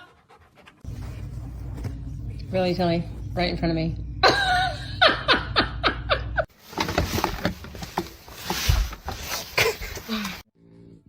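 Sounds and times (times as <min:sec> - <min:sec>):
person laughing: 0:04.2 - 0:06.5, 0:09.5 - 0:10.4.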